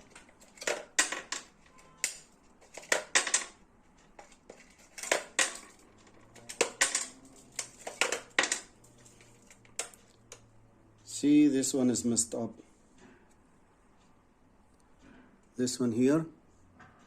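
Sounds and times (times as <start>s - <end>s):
batteries clicking and clinking: 0.0s - 3.6s, 4.2s - 10.4s.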